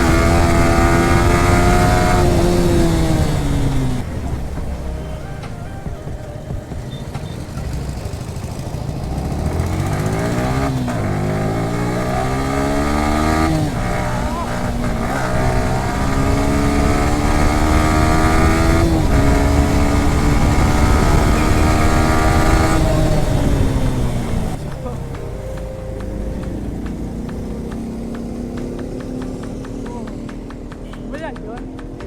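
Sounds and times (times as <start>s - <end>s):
motorcycle engine accelerating: 0.0s - 32.0s
wind and road noise: 0.0s - 32.0s.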